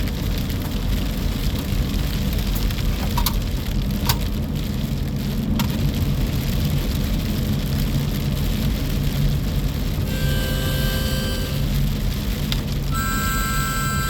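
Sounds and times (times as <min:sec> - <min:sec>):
rain: 0:00.0 - 0:14.0
faint steady tones: 0:10.0 - 0:11.8, 0:12.9 - 0:14.0.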